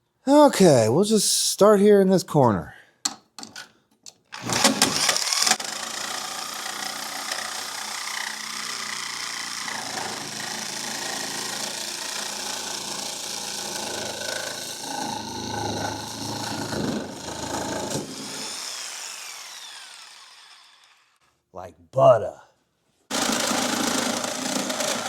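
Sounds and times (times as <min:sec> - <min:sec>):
power tool cutting steel: 0:04.4 - 0:21.2, 0:23.1 - 0:25.0.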